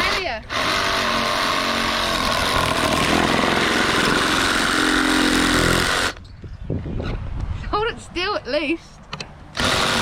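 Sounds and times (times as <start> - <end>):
power tool running: 0.0 - 6.2, 9.6 - 10.0.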